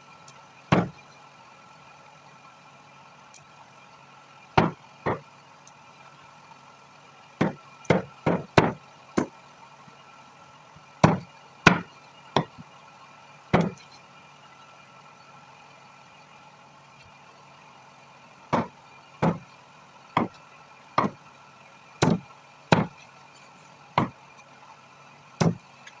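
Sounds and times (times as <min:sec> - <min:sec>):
knife chopping on a block: 0:00.7 - 0:00.9, 0:04.6 - 0:05.2, 0:07.4 - 0:09.3, 0:11.0 - 0:12.5, 0:13.5 - 0:13.8, 0:18.6 - 0:19.4, 0:22.0 - 0:23.0, 0:25.4 - 0:25.6.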